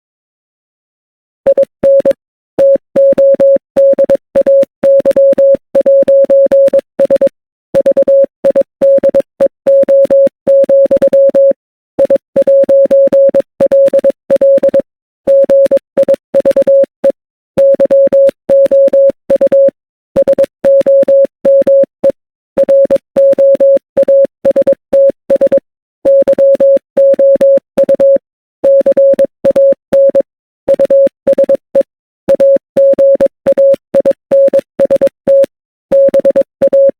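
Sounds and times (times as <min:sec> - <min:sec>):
morse code beeps: 0:01.5 - 0:36.9.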